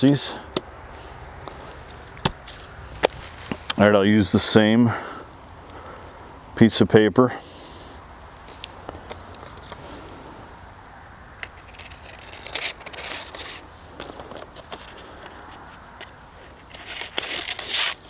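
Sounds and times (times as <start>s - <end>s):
paper handling clicks: 11.4s - 18.0s
knife blade slicing paper: 11.6s - 13.6s, 16.0s - 18.0s.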